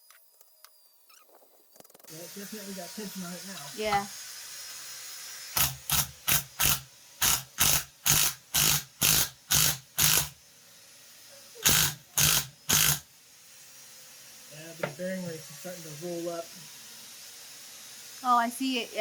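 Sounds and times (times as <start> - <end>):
power tool short bursts: 2.1 - 10.4, 11.4 - 13.1.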